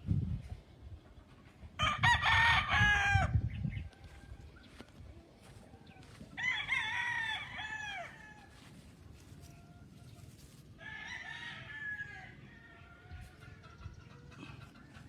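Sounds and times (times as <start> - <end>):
rooster crowing: 1.8 - 4.5, 6.1 - 8.8, 10.8 - 13.4.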